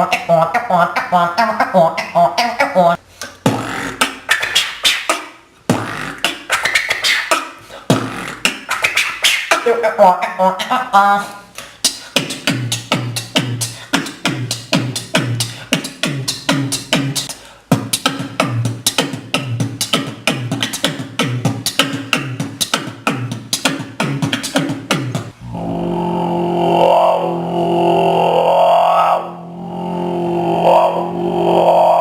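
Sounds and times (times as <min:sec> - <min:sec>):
beatboxing mouth percussion: 0:00.0 - 0:25.5
droning hum: 0:25.4 - 0:32.0.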